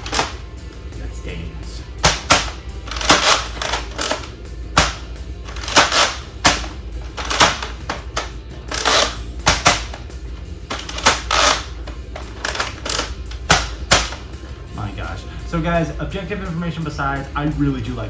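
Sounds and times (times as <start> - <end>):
rasping priming strokes: 1.9 - 14.4
dart blaster clicks and snaps: 2.0 - 10.1, 10.7 - 14.2.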